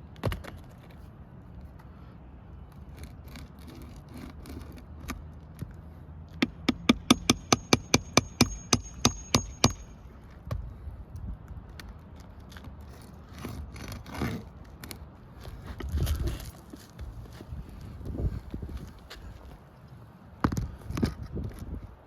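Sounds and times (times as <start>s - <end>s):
hammer striking metal tool: 6.7s - 10.0s.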